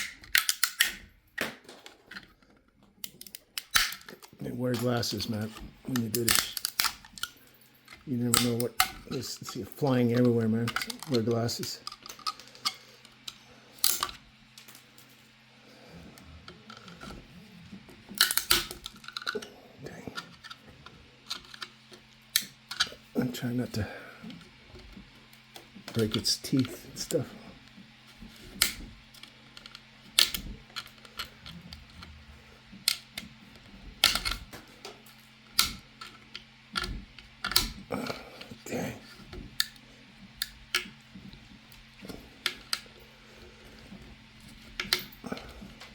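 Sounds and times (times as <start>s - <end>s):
small plastic clicks: 0.0s - 1.0s
plastic clicks and snaps: 0.0s - 2.3s, 34.0s - 37.8s
plastic snapping: 0.0s - 2.3s, 3.0s - 4.3s, 18.1s - 19.4s, 28.4s - 32.1s, 34.0s - 38.5s.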